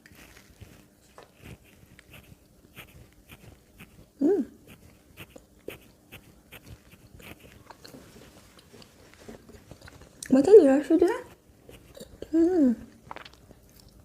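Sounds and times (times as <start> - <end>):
person humming: 4.2 - 4.6, 12.2 - 12.9
crunchy chewing clicks: 12.9 - 14.0
wet mouth chewing smacks: 12.9 - 14.0.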